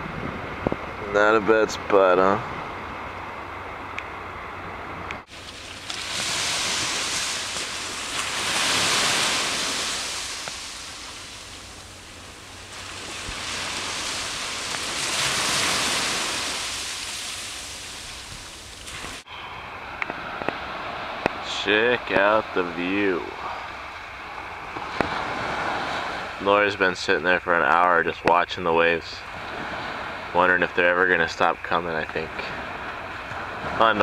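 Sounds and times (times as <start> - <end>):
waves washing onto beach: 4.8 - 34.0.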